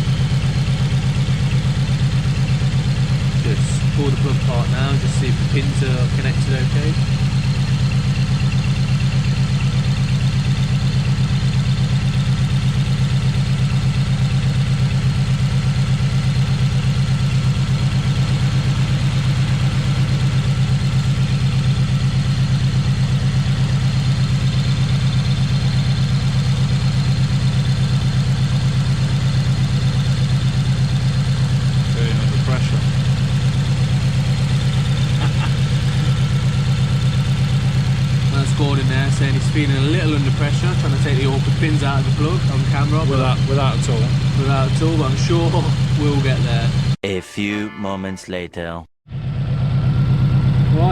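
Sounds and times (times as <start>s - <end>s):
car engine idling: 0.0s - 47.0s, 49.1s - 50.9s.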